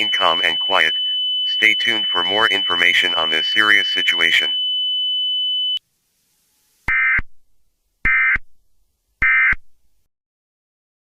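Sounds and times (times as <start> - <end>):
data tone bursts: 0.0 - 4.5
steady high tone: 0.0 - 4.5.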